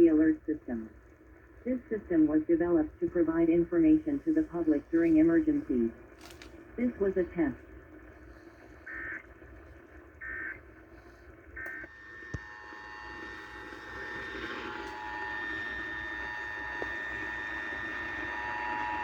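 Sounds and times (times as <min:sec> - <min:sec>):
faint held tones: 0:00.0 - 0:19.0
alert data tone bursts: 0:08.9 - 0:09.2.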